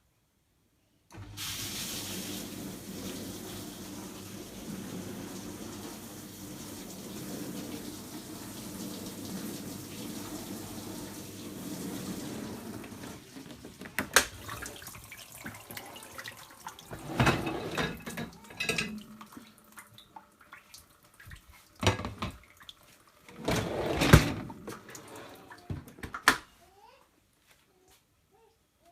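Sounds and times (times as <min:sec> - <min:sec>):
water spraying: 0:01.4 - 0:13.3
dishwasher pump humming: 0:02.0 - 0:19.8, 0:23.2 - 0:25.8.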